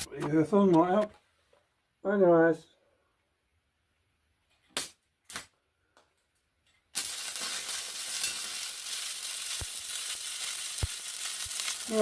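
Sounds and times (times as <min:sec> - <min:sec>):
welding arc crackling: 0:06.9 - 0:12.0.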